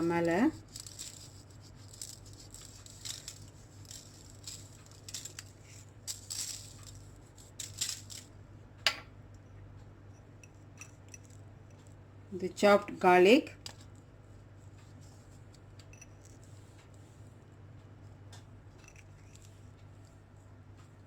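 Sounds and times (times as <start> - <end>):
salt sprinkling on fish: 0.2 - 7.6.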